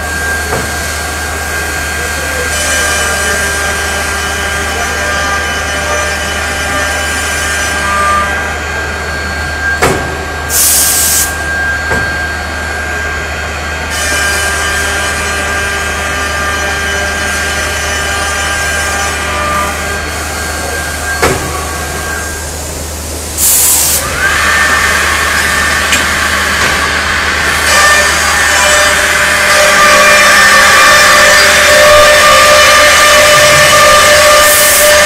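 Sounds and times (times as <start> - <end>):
machine humming and whining: 0.0 - 35.0
high hissing bursts: 10.5 - 11.4.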